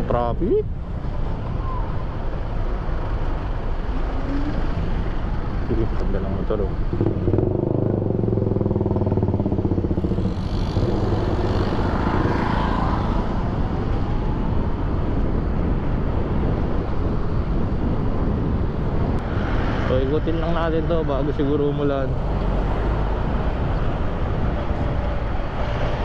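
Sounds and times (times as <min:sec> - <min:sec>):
wind and road rumble: 0:00.0 - 0:26.0
motorcycle engine: 0:06.8 - 0:13.8.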